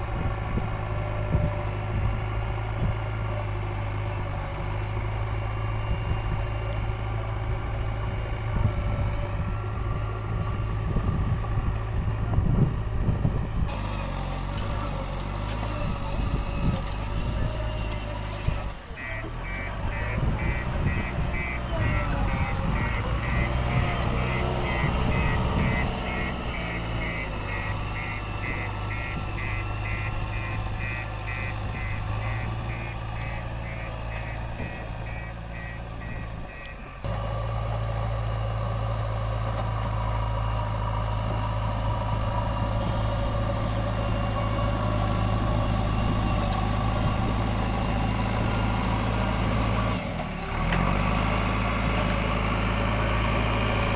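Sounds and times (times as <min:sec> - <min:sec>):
diesel engine running: 0:00.0 - 0:53.9
reversing alarm beeping: 0:19.0 - 0:36.9.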